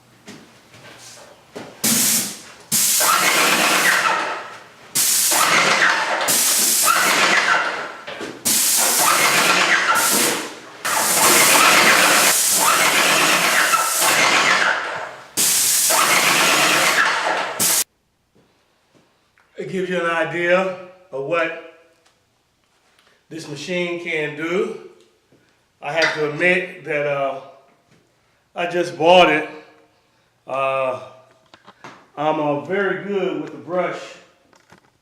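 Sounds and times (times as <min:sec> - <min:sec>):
paint sprayer hissing: 0:01.8 - 0:17.9.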